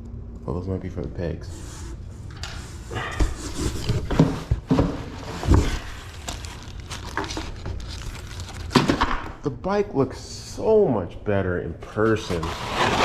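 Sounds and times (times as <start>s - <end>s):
packaging rustling: 3.5s - 9.3s.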